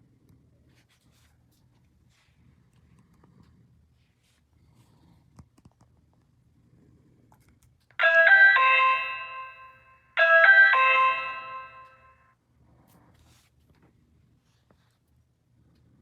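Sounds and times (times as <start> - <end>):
electronic doorbell chime: 8.0 - 12.2.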